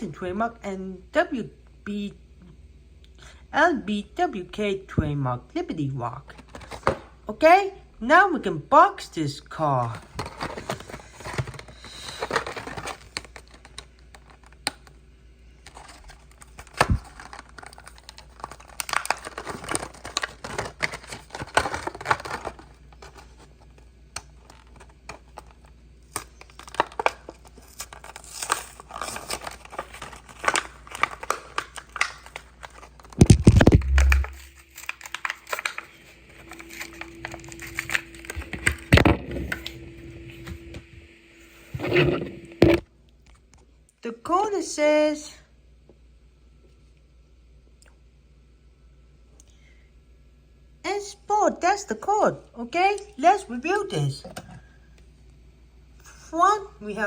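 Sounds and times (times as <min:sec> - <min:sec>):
packaging crinkling and tearing: 0:06.3 - 0:07.0, 0:10.0 - 0:15.0, 0:15.6 - 0:39.8.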